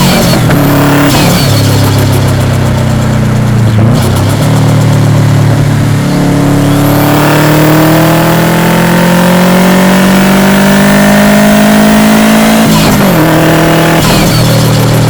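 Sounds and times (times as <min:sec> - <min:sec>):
car engine accelerating: 0:00.0 - 0:15.0.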